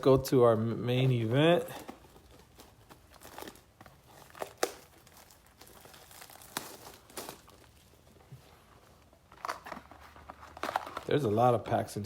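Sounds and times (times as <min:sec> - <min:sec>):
packaging crinkling and tearing: 0:01.1 - 0:08.2, 0:09.2 - 0:11.4.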